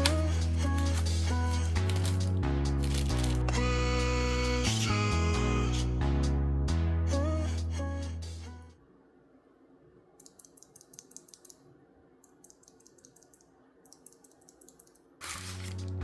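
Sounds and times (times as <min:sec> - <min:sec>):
mechanical keyboard clicking: 0:10.2 - 0:11.6, 0:12.3 - 0:15.0.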